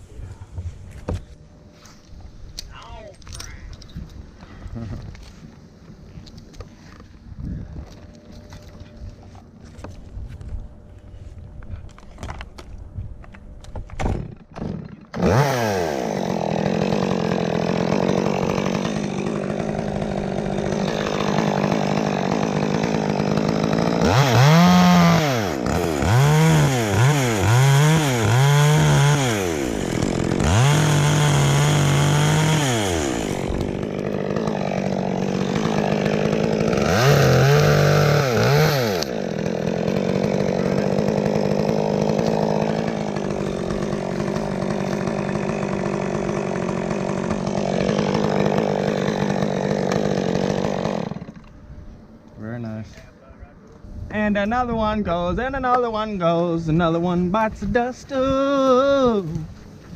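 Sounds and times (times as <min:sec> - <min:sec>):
chainsaw revving: 0:14.2 - 0:51.5.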